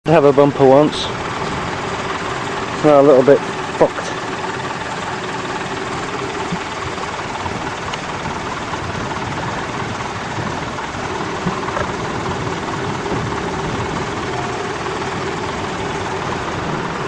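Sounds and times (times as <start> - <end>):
engine idling: 0.0 - 17.0.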